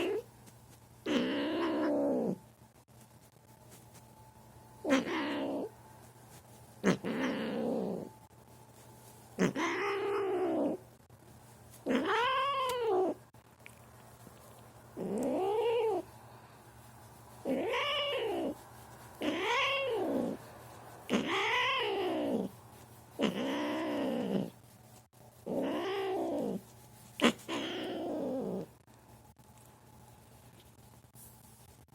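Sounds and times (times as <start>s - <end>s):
angry cat yowling: 4.9s - 5.7s, 6.9s - 8.1s, 9.4s - 10.8s, 11.9s - 13.2s, 17.5s - 18.6s, 19.2s - 20.4s, 21.1s - 22.5s, 23.2s - 24.5s, 25.5s - 26.6s, 27.2s - 28.7s.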